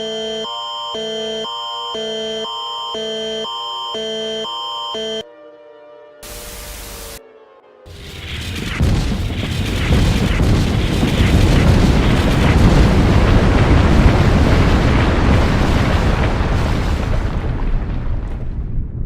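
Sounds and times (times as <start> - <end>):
explosion deep rumble: 7.9 - 19.0.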